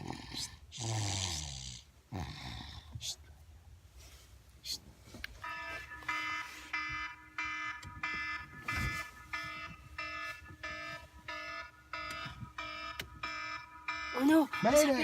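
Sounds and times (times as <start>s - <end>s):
electronic alarm beeping: 5.4s - 15.0s.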